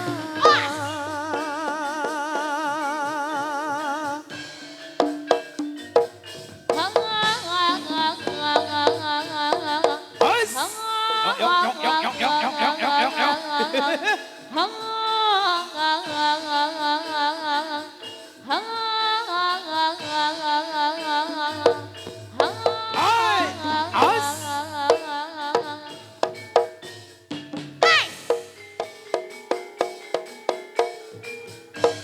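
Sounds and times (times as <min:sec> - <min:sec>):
high melody with vibrato: 0:21.4 - 0:25.4.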